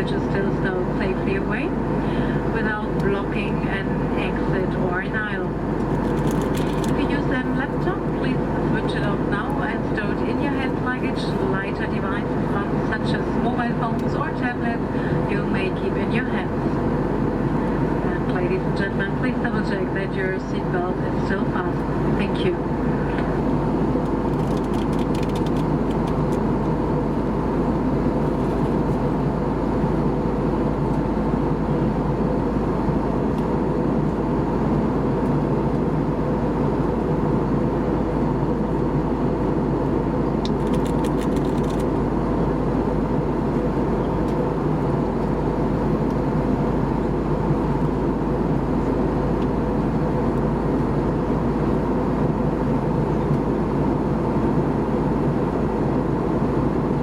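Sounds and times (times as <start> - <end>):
airplane cabin engine hum: 0.0 - 57.0.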